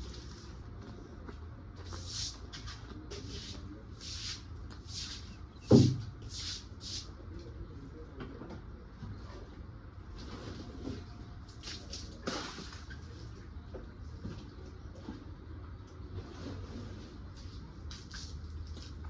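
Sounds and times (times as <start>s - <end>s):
heavy thud: 5.7s - 6.1s.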